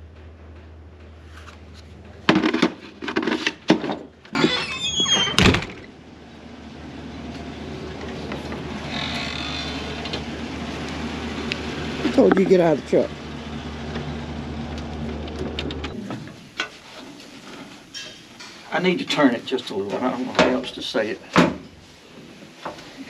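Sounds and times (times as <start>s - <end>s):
door shutting with heavy thump: 3.8s - 5.9s
door hinge squealing: 4.3s - 5.9s, 8.8s - 10.2s.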